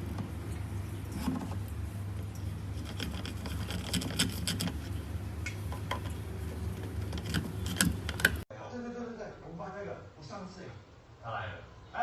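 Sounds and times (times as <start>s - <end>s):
handling clicks and rustles: 0.0s - 8.4s
steady low hum: 0.0s - 8.5s.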